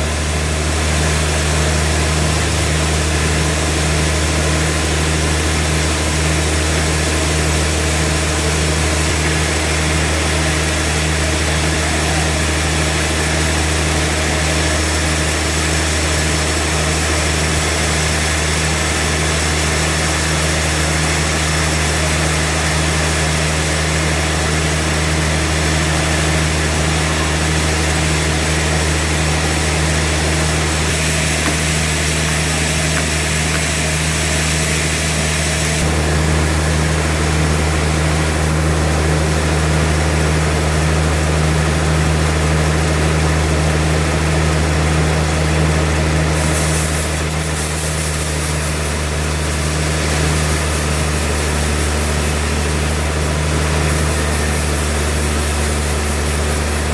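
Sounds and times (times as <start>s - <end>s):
sawmill engine drone: 0.0s - 56.9s
hissing noise: 46.3s - 56.9s.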